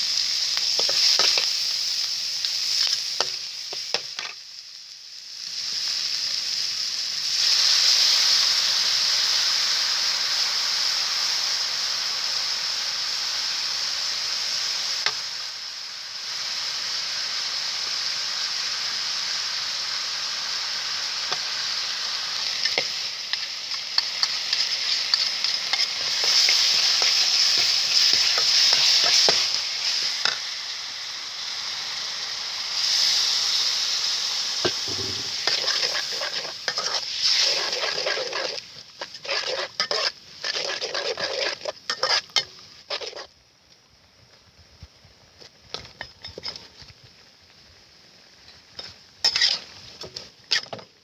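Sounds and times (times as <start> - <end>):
chicken sizzling in a pan: 0.0 - 51.0
utensil scraping a pan: 34.7 - 43.3, 48.8 - 50.8.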